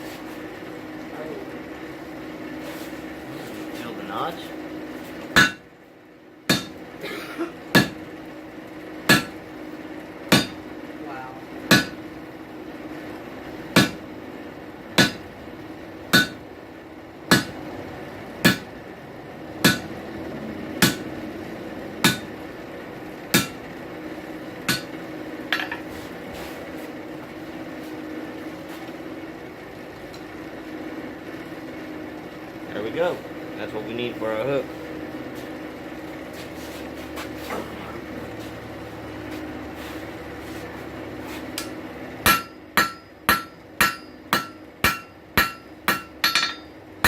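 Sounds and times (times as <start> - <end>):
steady hum: 0.0 - 47.0
hammer striking hot steel: 5.3 - 5.7, 6.5 - 6.8, 7.7 - 8.1, 9.1 - 9.4, 10.3 - 10.7, 11.7 - 12.0, 13.8 - 14.0, 15.0 - 15.3, 16.1 - 16.4, 17.3 - 17.6, 18.4 - 18.7, 19.6 - 20.0, 20.8 - 21.1, 22.0 - 22.4, 23.3 - 23.6, 24.6 - 25.9, 41.6 - 46.8.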